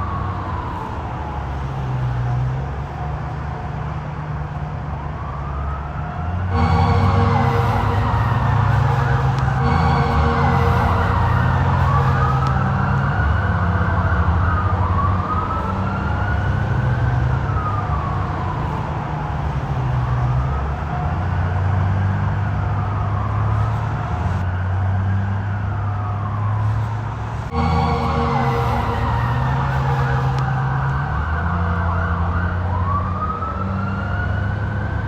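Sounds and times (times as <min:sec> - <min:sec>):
police siren wailing: 0:00.0 - 0:26.8, 0:27.5 - 0:35.0
low rumble: 0:06.5 - 0:13.4, 0:27.5 - 0:31.3.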